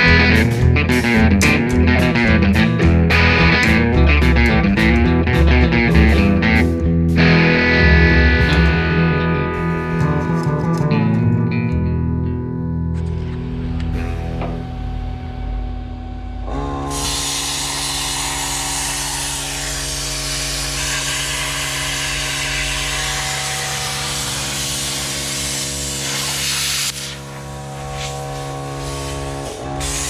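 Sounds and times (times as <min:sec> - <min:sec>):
guitar music: 0:00.0 - 0:20.1
cutting torch hissing: 0:13.0 - 0:30.0.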